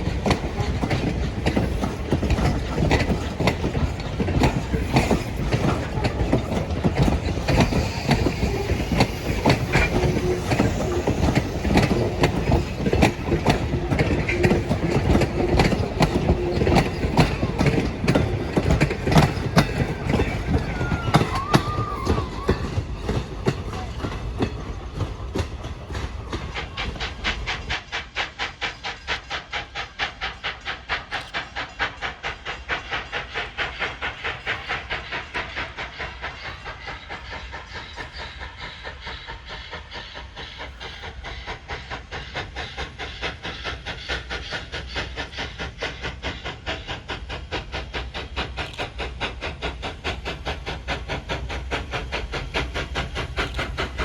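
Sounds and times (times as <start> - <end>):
steam hissing: 0.0 - 54.0
steam locomotive exhaust chuffs: 0.0 - 54.0.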